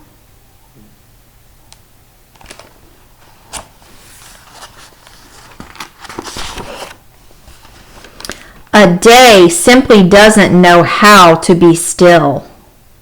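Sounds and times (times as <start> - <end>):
page turning rustle: 2.3 - 8.5.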